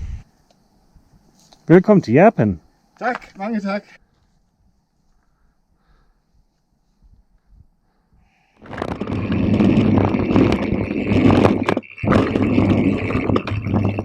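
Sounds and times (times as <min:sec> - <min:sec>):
mountain bike rattling over rough trail: 0:08.6 - 0:14.0.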